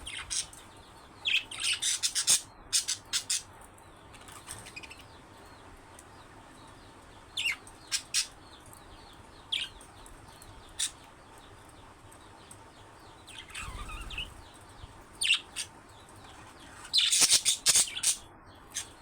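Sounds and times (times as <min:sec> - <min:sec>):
budgerigars chirping: 0:00.0 - 0:00.6, 0:01.2 - 0:03.5, 0:13.3 - 0:14.4, 0:15.2 - 0:15.7, 0:16.9 - 0:19.0.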